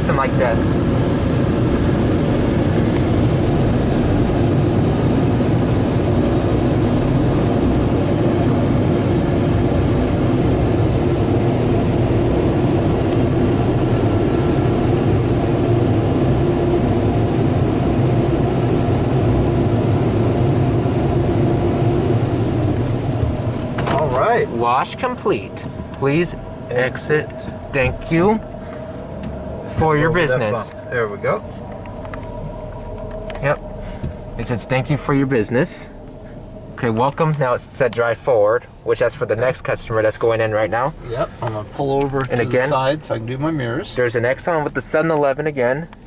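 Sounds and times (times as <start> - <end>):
air dryers blowing: 20.2 - 39.4.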